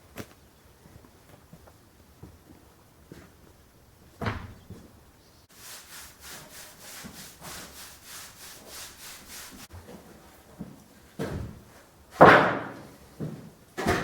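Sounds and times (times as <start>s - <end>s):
hand tool scraping wood: 5.5s - 9.7s.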